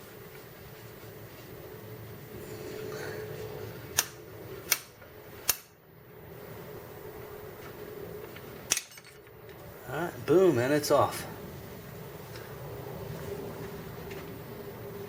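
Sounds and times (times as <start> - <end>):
steady hum: 0.0 - 15.0
sharp metallic clicks: 3.9 - 5.8.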